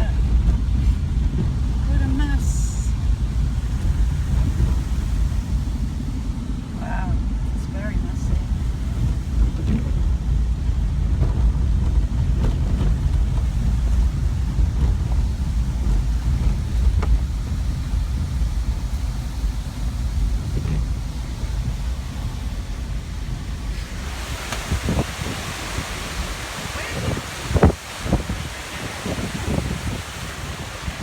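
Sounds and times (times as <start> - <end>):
wind buffeting microphone: 0.0 - 31.0
rushing hiss: 13.2 - 31.0.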